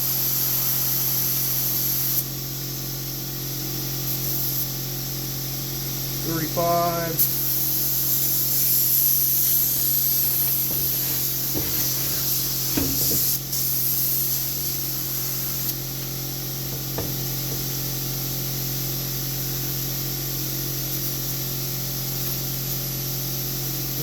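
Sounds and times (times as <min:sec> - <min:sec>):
air hissing from tire valve: 0:00.0 - 0:02.8, 0:07.2 - 0:18.0
light knocks: 0:10.6 - 0:12.0, 0:12.8 - 0:13.4, 0:16.8 - 0:17.2.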